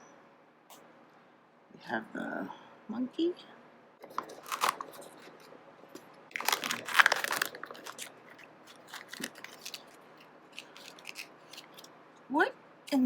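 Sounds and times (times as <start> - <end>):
wrapper crinkling and tearing: 4.0 - 5.5, 6.3 - 11.9.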